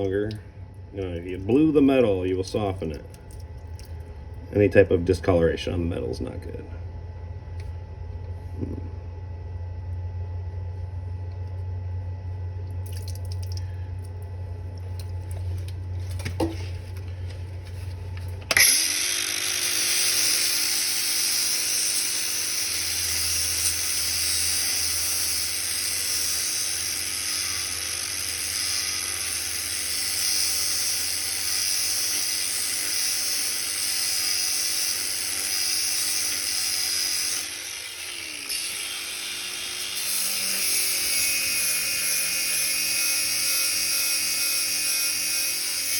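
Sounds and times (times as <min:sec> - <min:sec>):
low hum: 0:00.0 - 0:19.6
power grinder grinding steel: 0:18.4 - 0:45.9.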